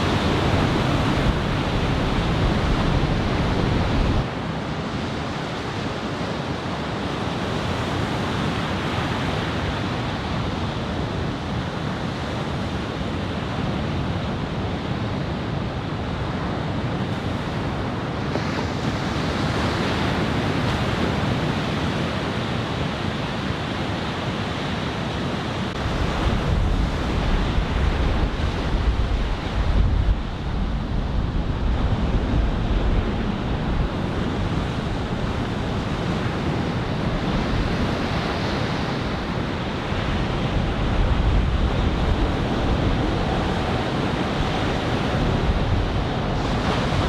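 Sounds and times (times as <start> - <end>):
wind buffeting microphone: 0.0 - 12.2, 24.8 - 47.0
ocean surf breaking: 0.0 - 13.0, 17.0 - 47.0.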